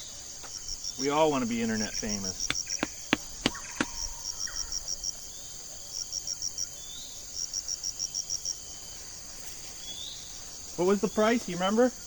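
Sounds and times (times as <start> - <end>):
insects chirping: 0.0 - 12.0
sharp clicks: 2.4 - 4.1.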